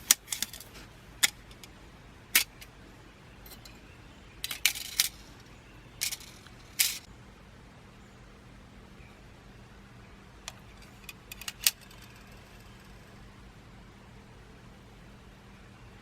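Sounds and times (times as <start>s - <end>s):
metal panels clinking and rattling: 0.0s - 1.7s, 4.4s - 7.1s.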